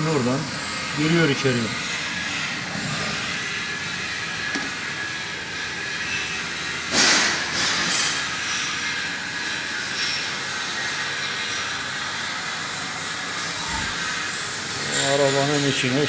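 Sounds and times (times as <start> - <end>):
steady hissing rushing noise: 13.1 - 14.8.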